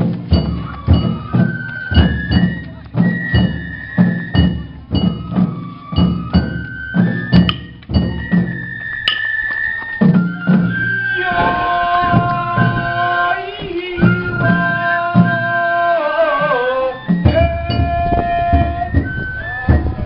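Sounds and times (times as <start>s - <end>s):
taiko drum strokes: 0.0s - 15.6s
high flute melody: 0.0s - 20.0s.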